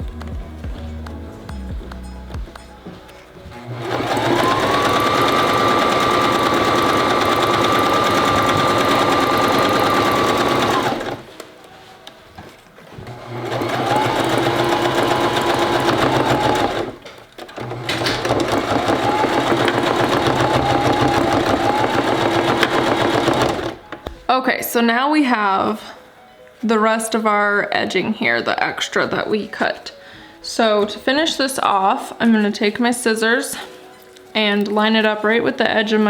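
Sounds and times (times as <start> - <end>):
sewing machine motor whine: 3.6 - 11.3, 13.0 - 23.8.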